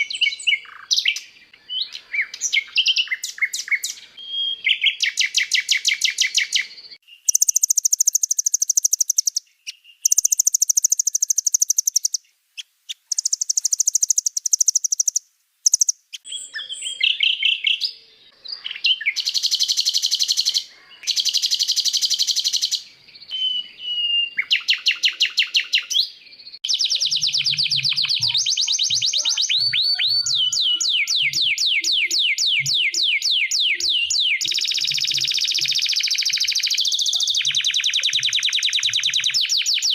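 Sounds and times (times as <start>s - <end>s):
recorded songbird trills: 0.0s - 39.9s.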